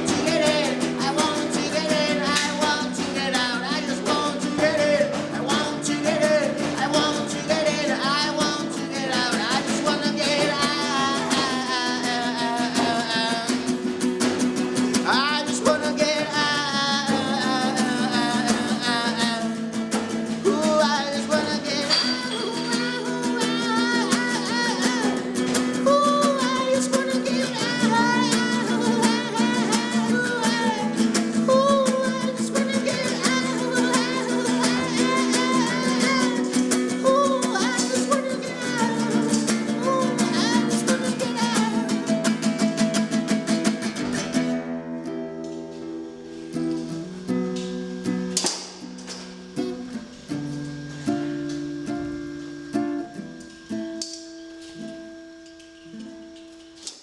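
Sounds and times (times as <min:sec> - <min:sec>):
instrumental band music with guitar: 0:00.0 - 0:56.8.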